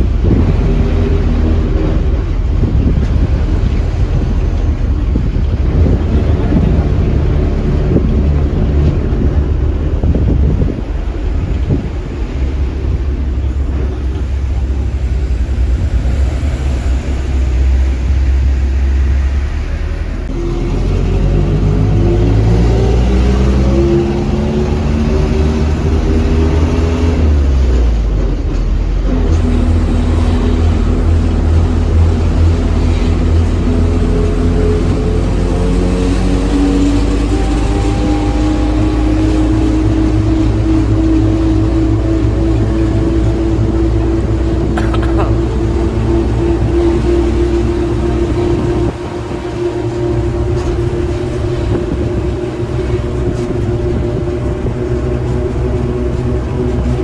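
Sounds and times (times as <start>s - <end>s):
bus diesel engine droning: 0.0s - 57.0s
road noise: 0.0s - 57.0s.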